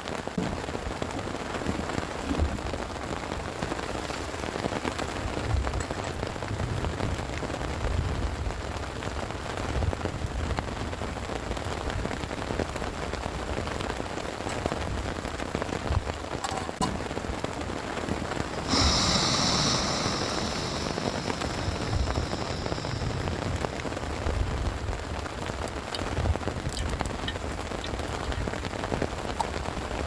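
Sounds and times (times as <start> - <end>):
heavy rain patter: 0.0 - 30.0
low gusty rumbles: 18.1 - 29.0.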